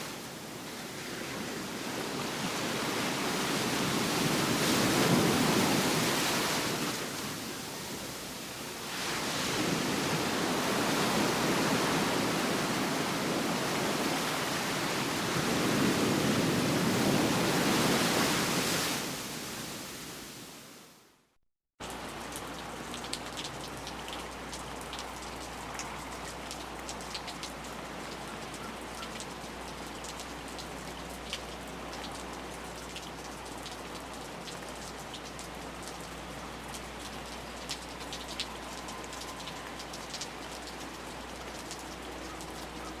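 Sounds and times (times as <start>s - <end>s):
light rain drops ticking: 21.8s - 43.0s
heavy rain: 29.3s - 43.0s.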